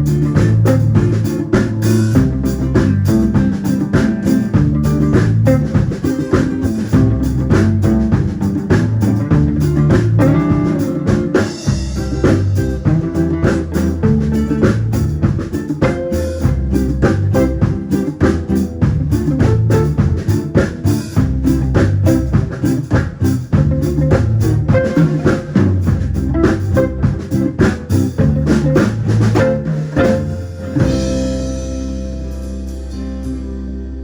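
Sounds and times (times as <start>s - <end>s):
drums beating fast: 0.0s - 31.9s
band music: 0.0s - 34.0s
guitar chord ringing: 28.2s - 34.0s.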